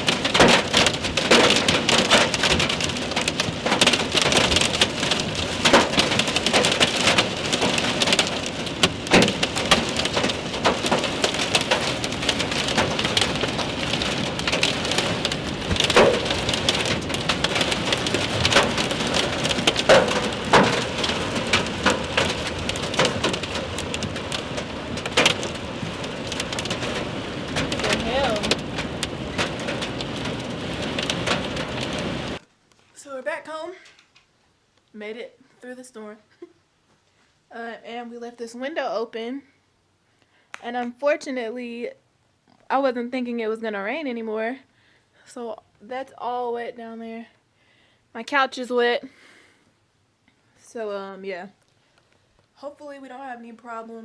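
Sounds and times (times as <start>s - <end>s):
hail striking: 0.0s - 32.4s
heavy rain pouring: 0.0s - 32.4s.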